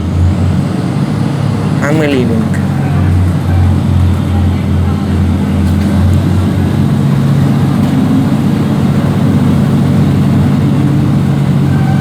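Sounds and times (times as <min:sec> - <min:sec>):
diesel train engine running: 0:00.0 - 0:12.0.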